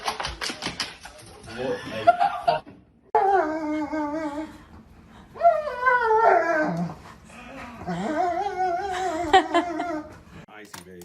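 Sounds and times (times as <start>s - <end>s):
dog whining: 3.2s - 4.5s, 5.4s - 10.2s.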